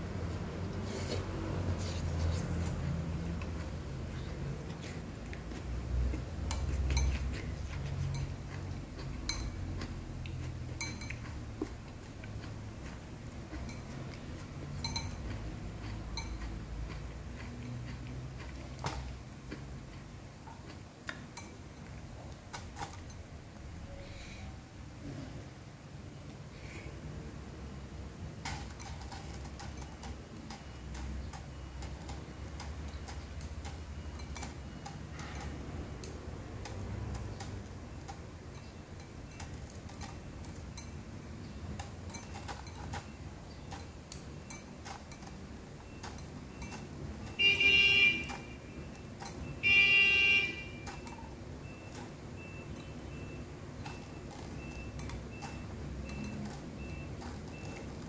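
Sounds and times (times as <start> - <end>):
faint high reversing beep: 33.7 - 35.5, 45.8 - 58.0
vehicle horn honks: 47.3 - 48.7, 49.6 - 50.9.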